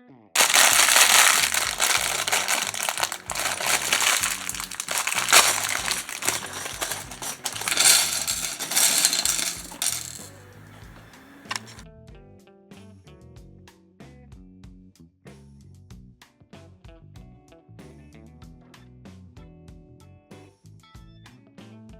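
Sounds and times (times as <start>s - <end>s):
plastic bag crinkling: 0.4s - 11.8s
plastic bricks clattering: 0.4s - 11.8s.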